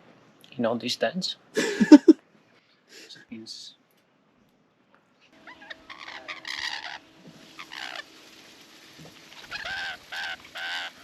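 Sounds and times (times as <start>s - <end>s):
bird calls: 5.2s - 8.2s, 9.1s - 11.0s.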